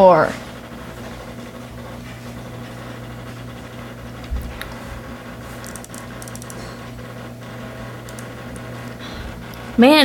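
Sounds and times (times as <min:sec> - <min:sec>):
floppy drive humming: 0:00.0 - 0:10.0
fine clicks of floppy drive: 0:00.6 - 0:10.0.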